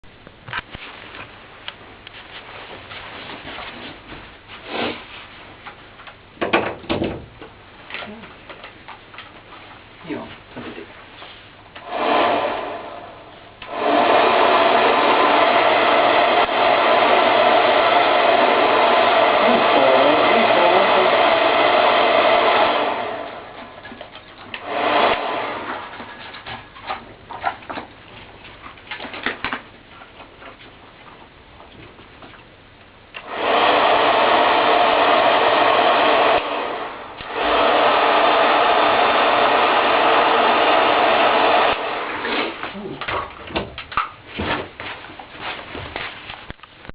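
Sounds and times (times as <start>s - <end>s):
hair dryer blowing: 11.8s - 23.8s, 24.5s - 26.1s, 33.2s - 42.7s.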